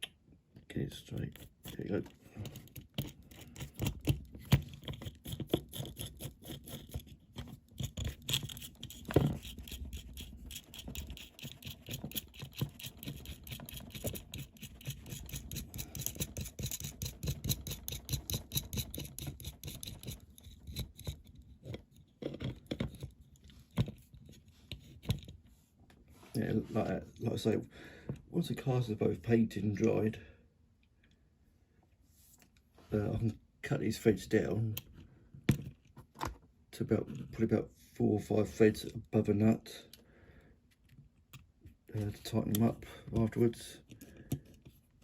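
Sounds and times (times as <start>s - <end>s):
small metal parts scraping and clicking: 1.3s - 25.3s.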